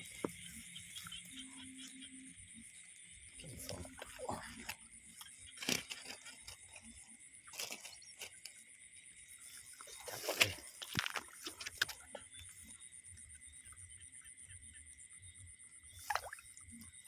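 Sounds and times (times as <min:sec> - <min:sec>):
rustles and clicks of gear: 0:04.6 - 0:08.6, 0:09.9 - 0:12.6
light water splashes: 0:15.8 - 0:17.0.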